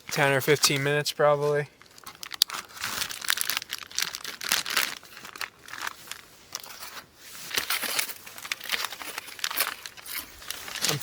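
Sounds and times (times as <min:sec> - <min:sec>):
plastic packaging crinkling: 0:00.1 - 0:11.0.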